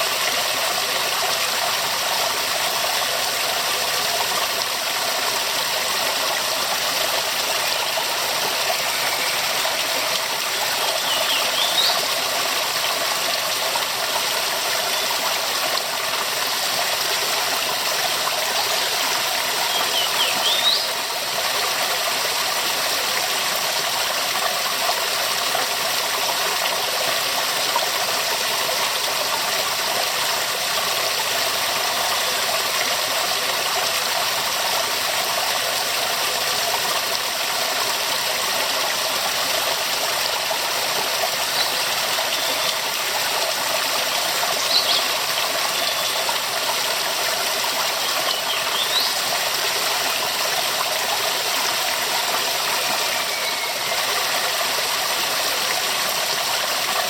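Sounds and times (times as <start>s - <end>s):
waterfall rushing: 38.0s - 57.0s.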